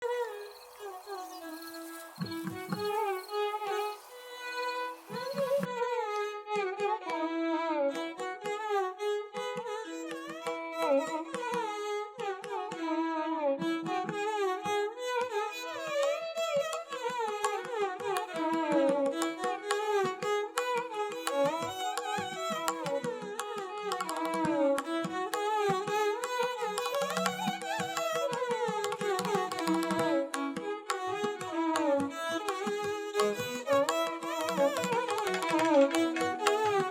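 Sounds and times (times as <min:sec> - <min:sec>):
light percussive strokes: 0:00.0 - 0:06.3, 0:19.0 - 0:36.9.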